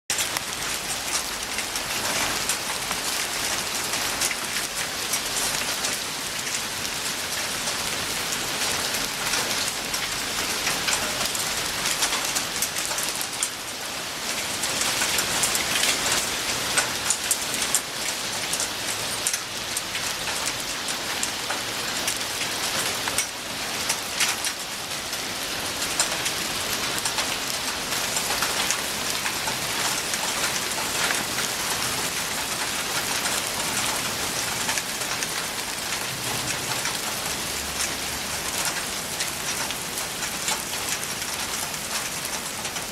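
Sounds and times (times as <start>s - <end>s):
hailstones pattering on hard surfaces: 0.1s - 42.9s.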